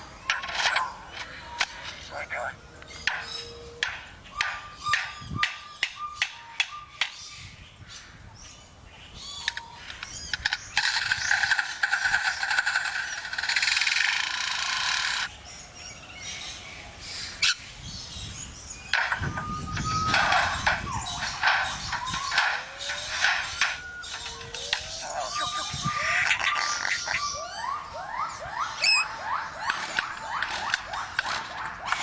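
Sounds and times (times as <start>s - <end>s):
bird mimicking beeps: 25.0s - 29.4s.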